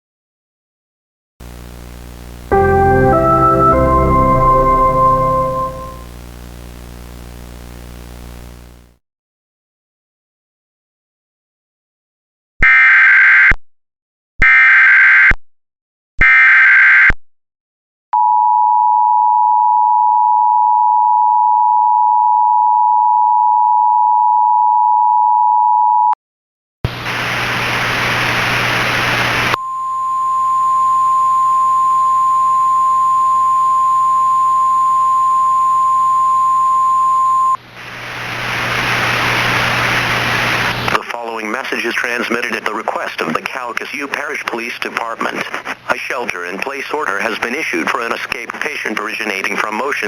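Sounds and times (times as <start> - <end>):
static hiss with low hum: 1.4 - 9.0, 26.9 - 36.7, 37.6 - 50.0
steady alert tone: 2.5 - 6.0
two-tone attention signal: 2.5 - 6.0, 29.6 - 37.6.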